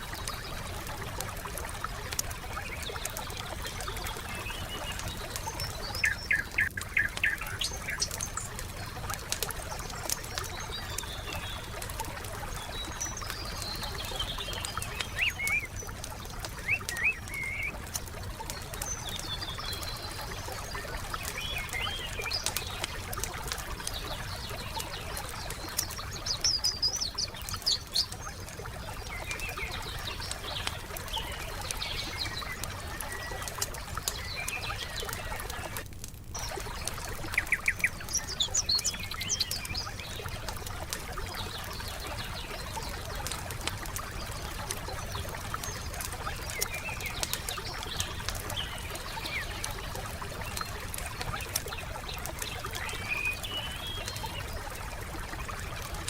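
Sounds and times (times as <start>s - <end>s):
wood fire crackling and popping: 0.0s - 56.0s
birds chirping and singing: 37.3s - 40.0s.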